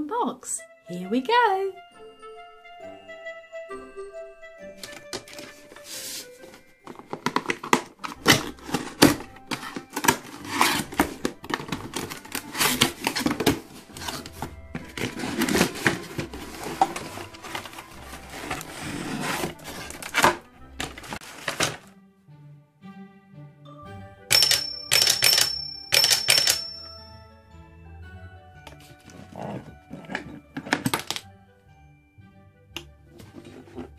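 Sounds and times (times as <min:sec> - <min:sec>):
quiet background music: 0:00.0 - 0:33.9
cardboard and plastic rustling: 0:04.8 - 0:21.9, 0:28.7 - 0:31.2, 0:33.2 - 0:33.9.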